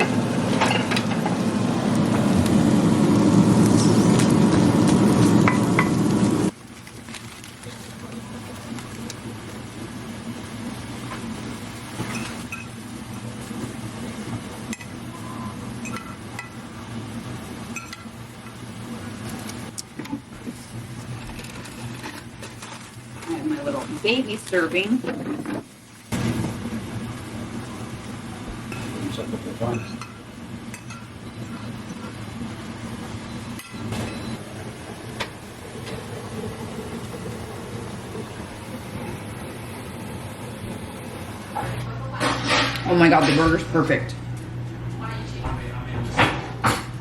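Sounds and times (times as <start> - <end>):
kitchen appliance humming: 0.0 - 47.0
dishes and utensils clinking: 29.6 - 31.7, 42.2 - 43.6.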